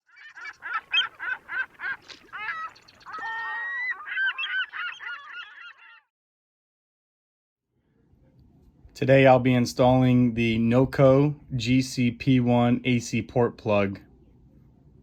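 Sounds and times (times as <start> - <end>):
geese honking: 0.0 - 6.1.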